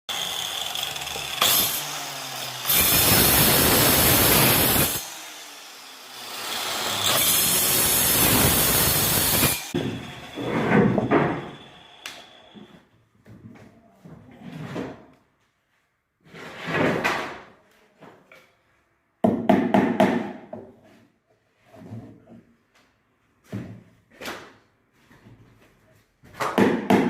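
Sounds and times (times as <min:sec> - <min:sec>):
power tool working wood: 0:00.1 - 0:12.6.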